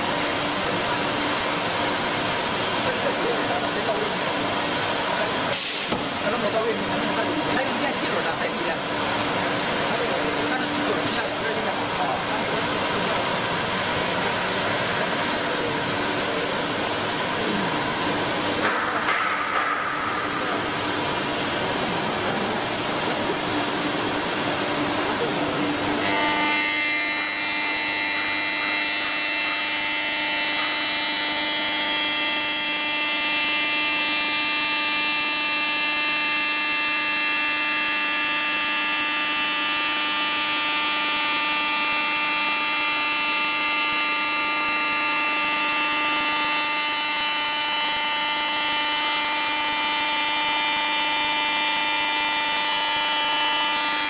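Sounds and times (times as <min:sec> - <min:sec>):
high spindle whine: 0:06.1 - 0:54.0
whine of several even tones: 0:15.3 - 0:54.0.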